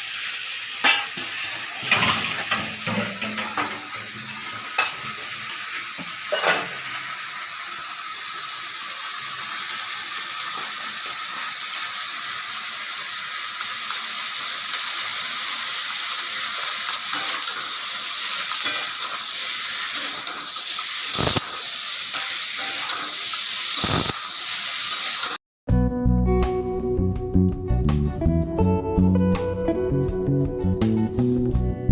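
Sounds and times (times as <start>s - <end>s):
potatoes sizzling in hot oil: 0.0s - 25.4s
guitar music: 25.7s - 31.9s.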